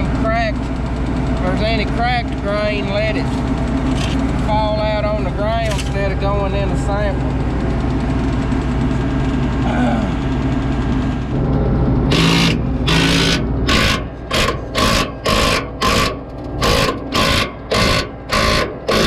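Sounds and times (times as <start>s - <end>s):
machine running: 0.0s - 19.0s
ratchet wrench rasping: 3.2s - 4.3s, 12.1s - 19.0s.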